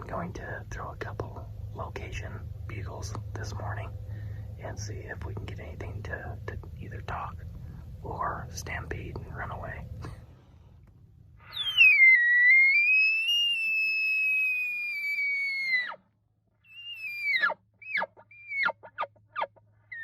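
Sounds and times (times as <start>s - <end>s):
long high whistled elk call: 11.4s - 16.0s, 16.6s - 18.8s
quick falling chirps: 11.4s - 16.0s.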